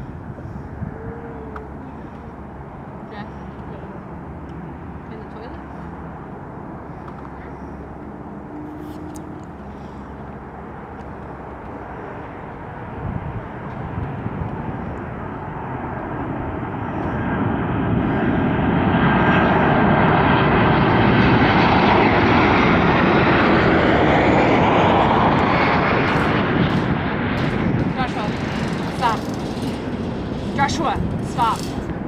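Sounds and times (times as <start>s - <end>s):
airplane engines roaring: 0.0s - 32.0s.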